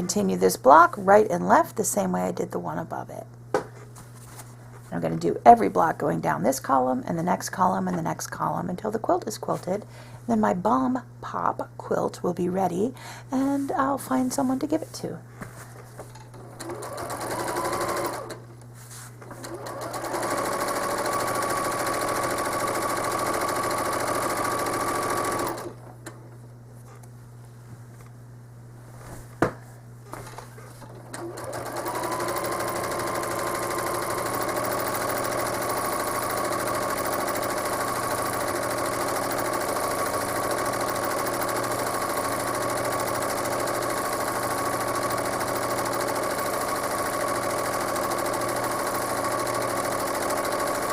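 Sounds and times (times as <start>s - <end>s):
sewing machine stitching: 16.1s - 18.5s, 19.2s - 26.2s, 30.2s - 50.9s.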